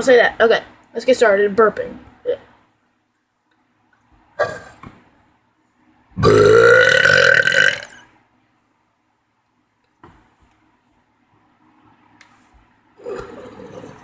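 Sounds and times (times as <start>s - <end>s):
person burping: 4.4s - 4.8s, 6.2s - 8.0s, 13.0s - 14.0s.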